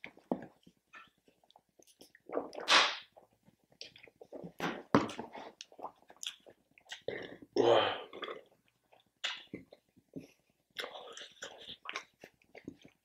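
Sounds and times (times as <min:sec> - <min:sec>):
chewing and mouth noises: 0:05.4 - 0:07.5, 0:08.1 - 0:13.0.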